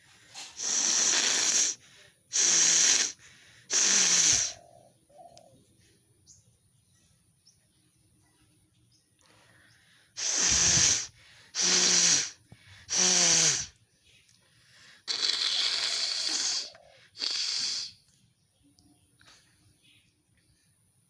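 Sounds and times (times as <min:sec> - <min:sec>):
person sneezing: 0:00.5 - 0:04.6, 0:10.2 - 0:13.7.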